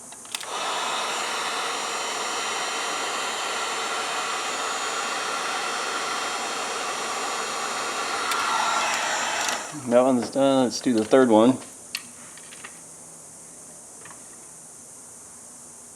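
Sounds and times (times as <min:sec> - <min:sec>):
heat gun blowing air: 0:00.0 - 0:10.1.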